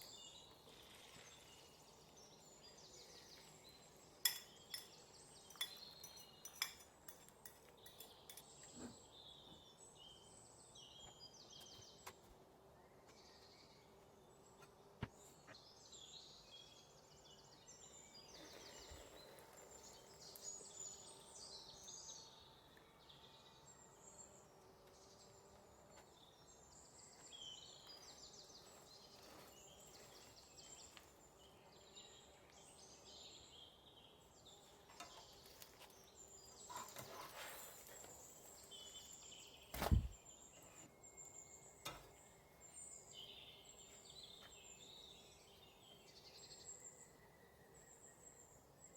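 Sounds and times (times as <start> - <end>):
faint birdsong: 0.0 - 48.9.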